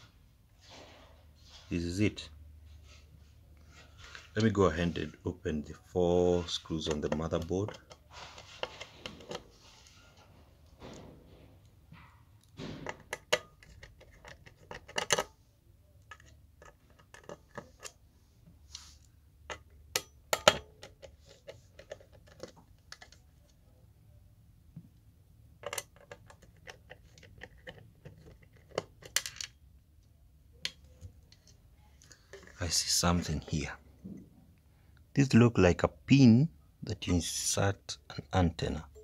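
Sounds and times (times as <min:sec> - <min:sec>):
screwdriver clicks and scrapes: 0:06.6 - 0:09.6, 0:12.4 - 0:15.4, 0:16.0 - 0:18.0, 0:19.5 - 0:23.2, 0:25.6 - 0:29.5.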